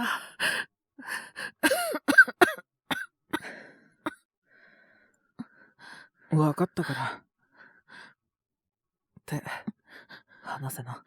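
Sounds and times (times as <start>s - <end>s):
man coughing harshly: 1.6s - 3.5s.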